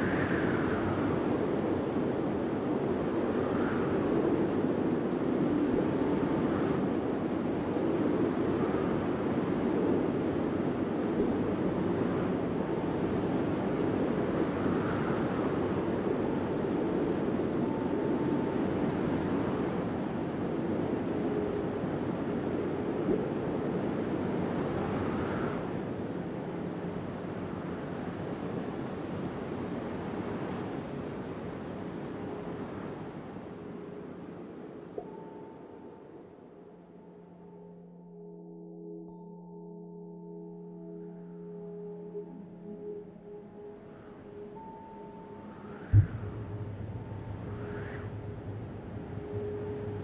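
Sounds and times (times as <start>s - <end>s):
wind blowing: 42.2s - 50.0s.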